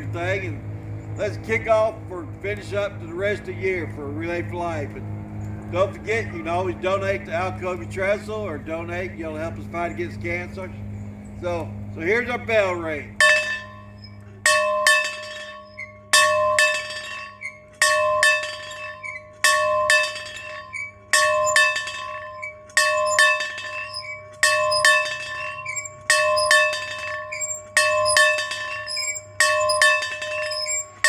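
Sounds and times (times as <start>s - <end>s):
bell ringing in pairs: 13.2s - 31.0s.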